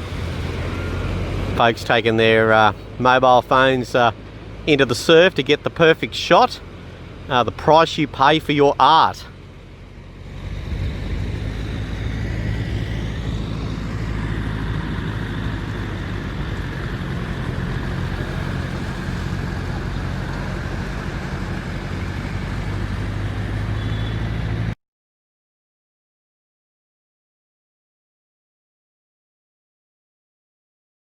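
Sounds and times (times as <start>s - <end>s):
noisy wash of sound: 0.0s - 5.8s, 6.6s - 24.7s
vehicle engine humming: 0.0s - 24.8s.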